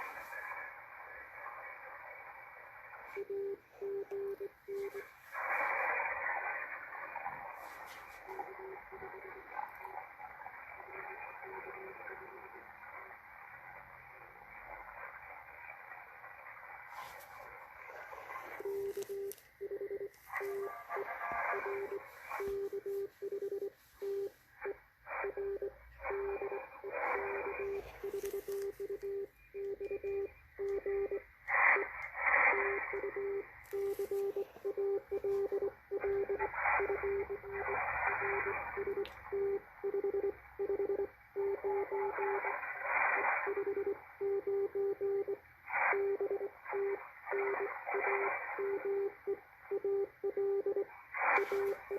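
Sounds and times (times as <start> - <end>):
receiver hiss: 0.0 - 51.9
static bursts: 0.0 - 51.9
morse code tone: 3.1 - 5.8, 18.6 - 42.4, 43.5 - 45.4, 46.0 - 51.9.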